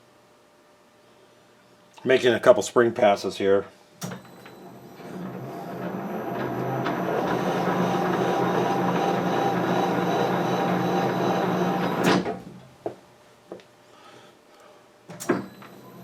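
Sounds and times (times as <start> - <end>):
metal lathe running: 5.1 - 12.1.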